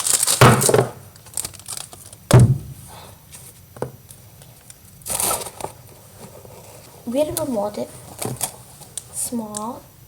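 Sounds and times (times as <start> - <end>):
dull thump: 2.3 - 2.8.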